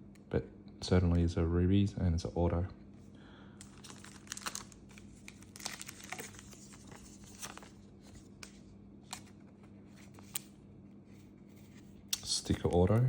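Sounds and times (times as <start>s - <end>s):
plastic packaging crinkling: 3.6s - 8.4s.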